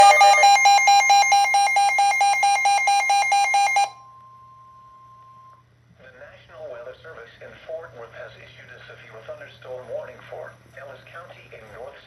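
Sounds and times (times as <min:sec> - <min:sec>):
alert alarm beeping rapidly: 0:00.0 - 0:04.0.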